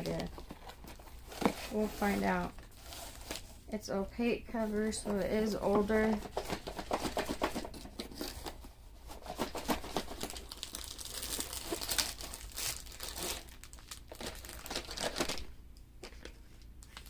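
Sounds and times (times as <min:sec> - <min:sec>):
plastic packaging crinkling: 0:00.0 - 0:03.7, 0:09.2 - 0:17.0.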